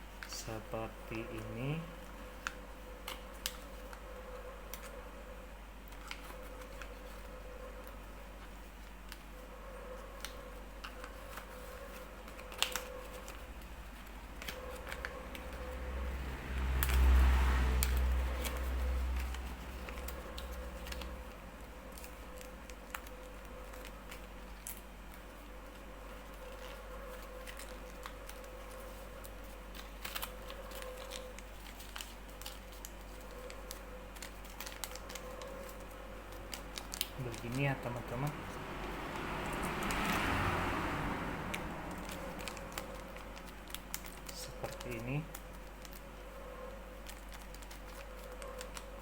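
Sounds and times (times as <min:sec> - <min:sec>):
paper being folded and creased: 0:10.2 - 0:15.6, 0:17.8 - 0:38.3, 0:41.6 - 0:49.0.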